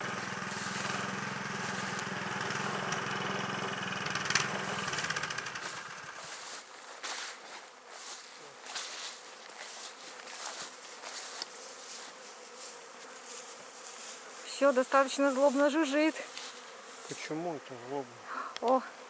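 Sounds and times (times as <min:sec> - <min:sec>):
engine idling: 0:00.0 - 0:06.1
bees buzzing: 0:00.0 - 0:19.0.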